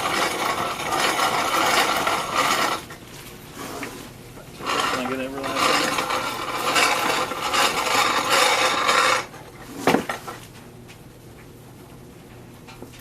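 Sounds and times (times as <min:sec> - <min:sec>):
grain mill grinding: 0:00.0 - 0:10.2.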